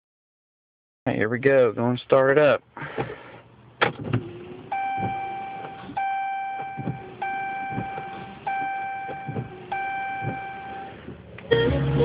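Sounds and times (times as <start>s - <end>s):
dashboard warning chime: 4.7s - 11.0s.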